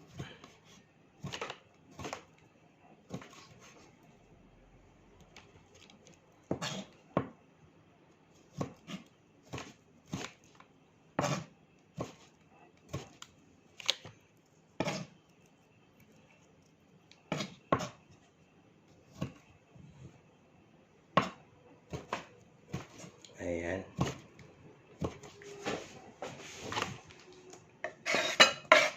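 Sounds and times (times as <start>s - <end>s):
knife chopping on cutting board: 0.1s - 2.3s, 3.1s - 3.8s, 6.5s - 7.4s, 8.5s - 10.4s, 11.2s - 12.3s, 14.8s - 15.1s, 17.3s - 18.0s, 19.1s - 19.4s, 21.2s - 23.1s, 24.0s - 24.3s.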